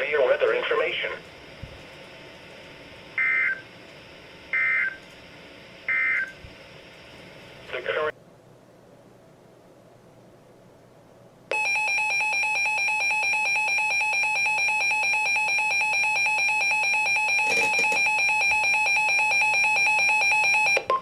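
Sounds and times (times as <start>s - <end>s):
two-tone alert signal: 14.8s - 21.0s.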